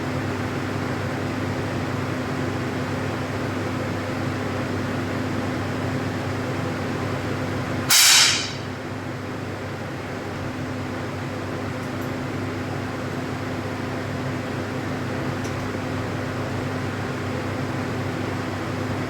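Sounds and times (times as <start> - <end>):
steady fan hum: 0.0 - 19.0
air pistol shot: 7.9 - 8.7.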